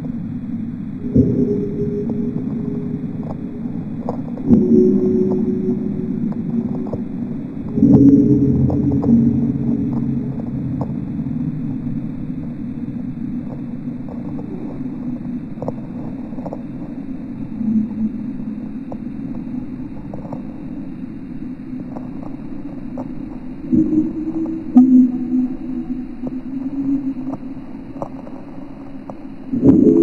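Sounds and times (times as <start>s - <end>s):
low muffled droning rumble: 0.0s - 30.0s
faint crackling clicks: 2.1s - 11.9s, 13.3s - 17.5s, 18.8s - 25.0s, 26.2s - 29.8s.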